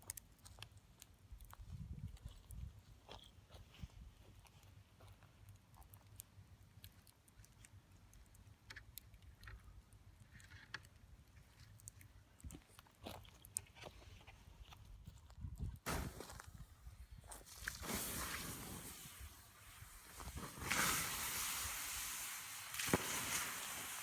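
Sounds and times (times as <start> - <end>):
campfire crackling: 5.4 - 14.4, 15.8 - 24.0.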